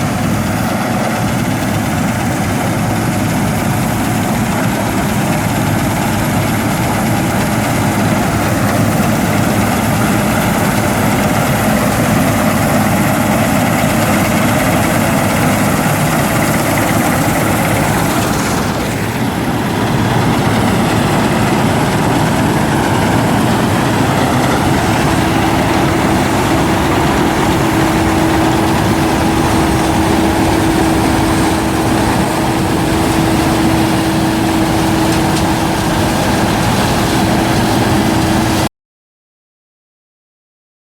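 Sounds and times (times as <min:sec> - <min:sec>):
combine harvester drone: 0:00.0 - 0:38.7
steady higher tone: 0:07.2 - 0:38.5.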